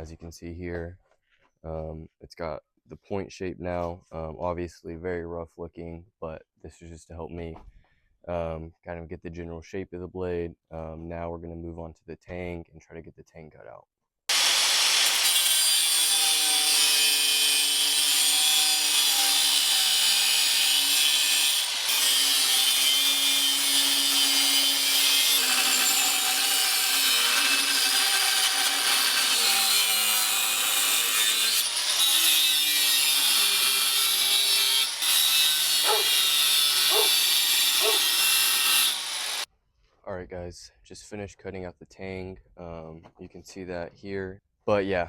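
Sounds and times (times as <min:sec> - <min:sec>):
angle grinder cutting steel: 0:14.3 - 0:39.5.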